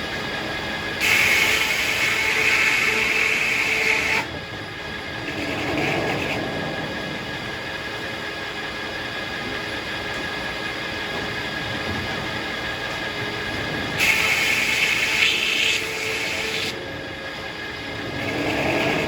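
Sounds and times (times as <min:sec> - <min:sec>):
sawmill running: 0:00.0 - 0:19.0
circular saw blade cutting log: 0:01.0 - 0:04.3, 0:14.0 - 0:16.8, 0:18.2 - 0:19.0.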